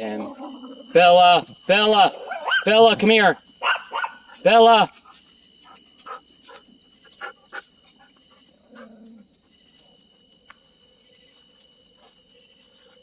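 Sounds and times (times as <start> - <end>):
night insects trilling: 0.0 - 13.0
dogs barking: 2.1 - 3.0, 3.6 - 9.2.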